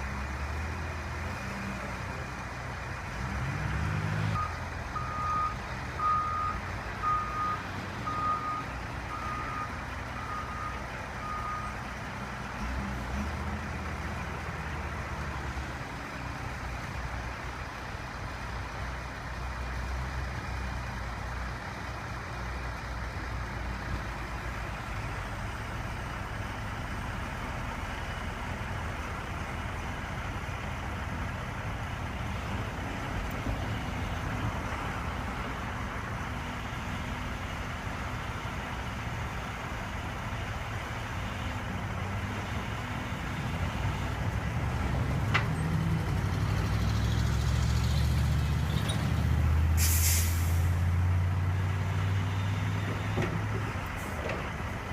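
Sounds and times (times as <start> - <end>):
heavy engine rumbling: 0.0 - 54.9
short hiss: 49.8 - 50.8.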